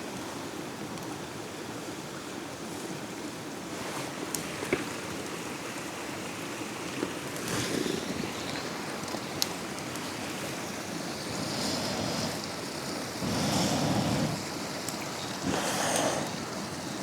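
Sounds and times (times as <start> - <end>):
campfire crackle: 4.1 - 17.0.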